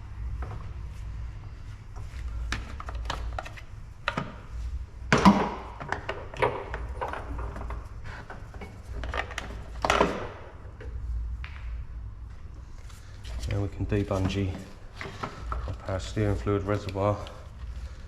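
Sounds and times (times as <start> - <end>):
steady low hum: 0.0 - 18.0
plastic covers clicking and knocking: 5.1 - 7.8.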